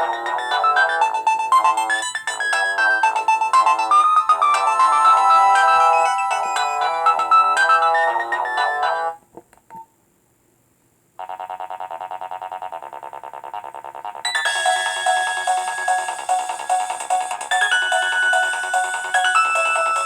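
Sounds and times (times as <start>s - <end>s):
electronic ringtone melody: 0.0s - 9.2s, 14.3s - 20.0s
ringtone with fast repeated notes: 0.0s - 9.2s, 11.2s - 20.0s.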